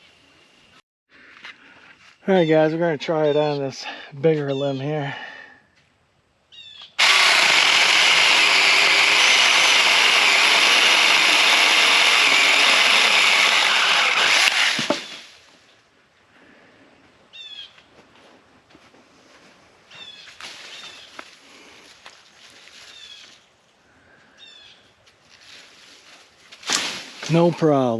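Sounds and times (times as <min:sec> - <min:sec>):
battery chainsaw cutting wood: 0:07.0 - 0:15.2.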